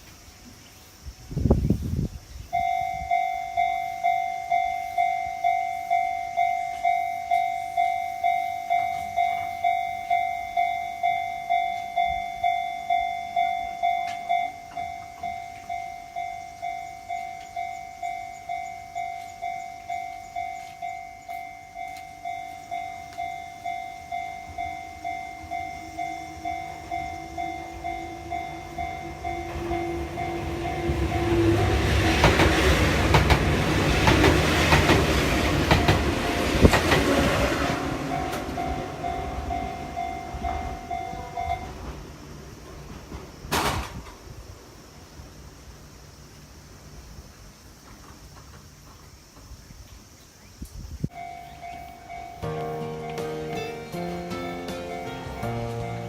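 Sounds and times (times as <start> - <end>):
electric train approaching: 0.0 - 49.4, 51.0 - 56.0
level crossing alarm pulsing: 2.6 - 42.0.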